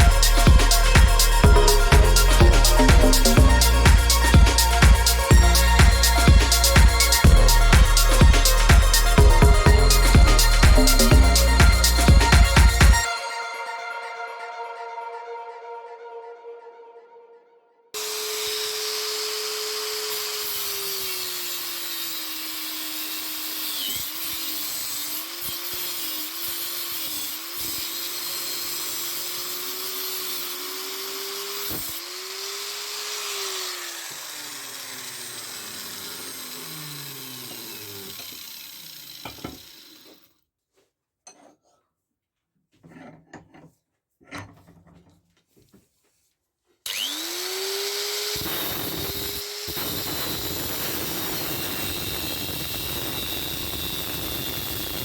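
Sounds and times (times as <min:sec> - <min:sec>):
power tool motor running: 0:00.0 - 0:13.1, 0:18.0 - 0:40.3, 0:46.9 - 0:55.0.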